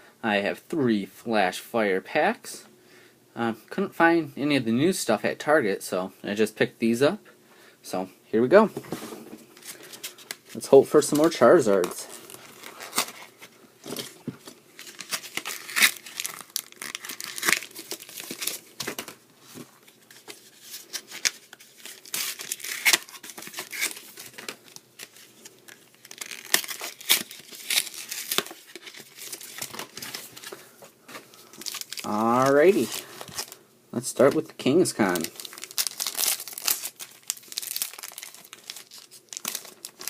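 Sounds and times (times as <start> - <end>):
foil wrapper crinkling and tearing: 11.0 - 19.1, 19.9 - 33.6, 34.2 - 40.0.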